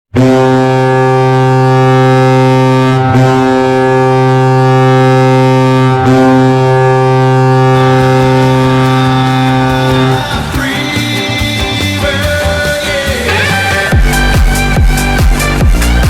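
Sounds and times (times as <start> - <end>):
hockey goal horn blasts: 0.1 - 12.3.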